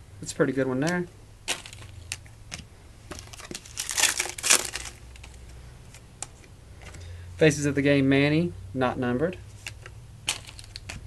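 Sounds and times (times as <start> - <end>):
card packaging crinkling: 1.5 - 2.3, 3.1 - 6.1, 9.6 - 11.0.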